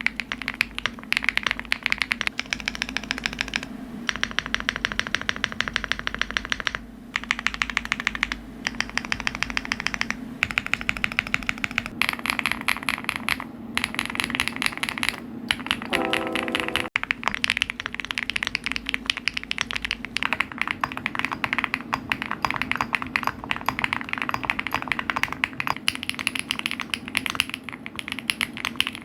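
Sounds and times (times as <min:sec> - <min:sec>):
fast typing on keyboards: 0:00.0 - 0:29.0
brief low tone: 0:15.9 - 0:16.9.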